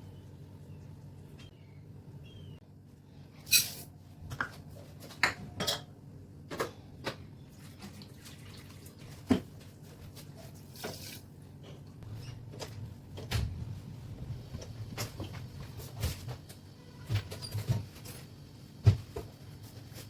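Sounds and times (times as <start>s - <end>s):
utensils and dishes clinking: 3.4s - 4.0s, 5.2s - 6.0s, 10.5s - 11.3s.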